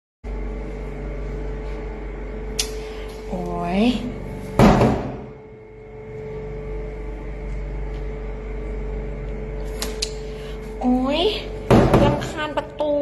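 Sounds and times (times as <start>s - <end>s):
steady hum with held tone: 0.2s - 13.0s
door banging shut: 4.6s - 5.3s, 11.7s - 12.3s.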